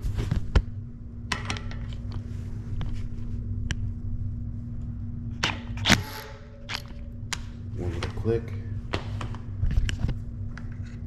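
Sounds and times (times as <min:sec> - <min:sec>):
steady low hum: 0:00.0 - 0:11.0
tools clicking and knocking: 0:05.9 - 0:07.1.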